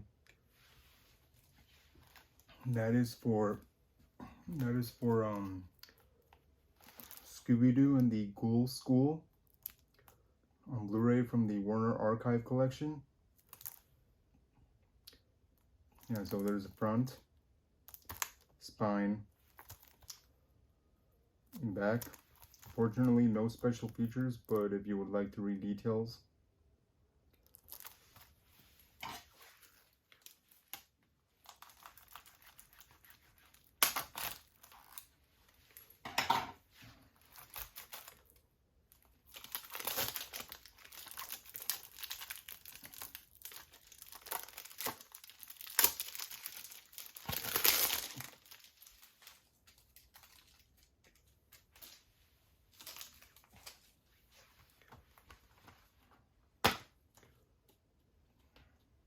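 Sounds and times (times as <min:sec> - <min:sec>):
shrink-wrap crinkling and tearing: 0:04.5 - 0:08.0, 0:09.4 - 0:10.2, 0:13.4 - 0:13.9, 0:16.0 - 0:17.2, 0:17.8 - 0:18.6, 0:19.4 - 0:20.3, 0:21.6 - 0:24.6, 0:27.4 - 0:36.0, 0:37.0 - 0:52.1, 0:52.7 - 0:53.9.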